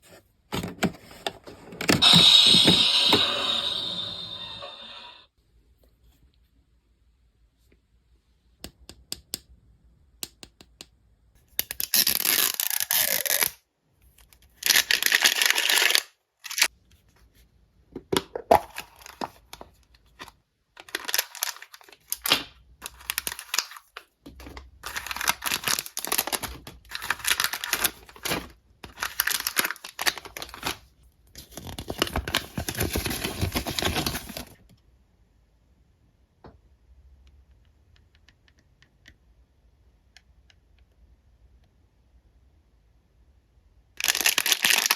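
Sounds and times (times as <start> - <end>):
packaging tearing: 11.7 - 13.6, 20.8 - 24.0, 24.8 - 30.8, 31.5 - 34.5, 44.0 - 44.9.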